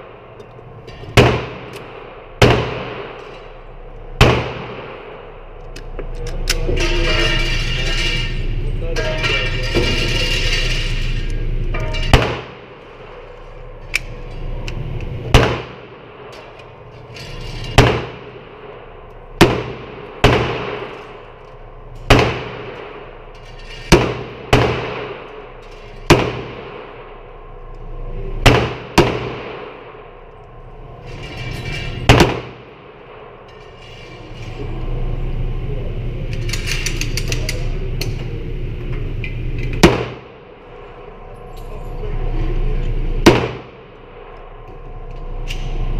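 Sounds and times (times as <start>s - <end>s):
gunshots with ringing echo: 1.1s - 3.2s, 4.2s - 5.5s, 12.1s - 13.2s, 15.3s - 16.3s, 17.8s - 23.3s, 23.9s - 25.5s, 26.1s - 27.7s, 28.4s - 30.3s, 32.1s - 33.4s, 39.8s - 41.2s, 43.2s - 44.4s.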